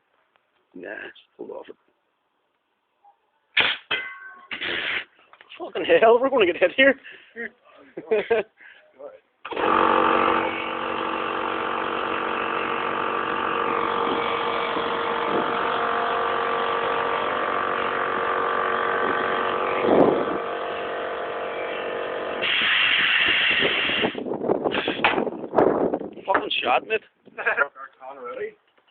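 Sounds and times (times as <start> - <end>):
small motor humming: 9.5 - 24.2
hiss: 22.4 - 24.9.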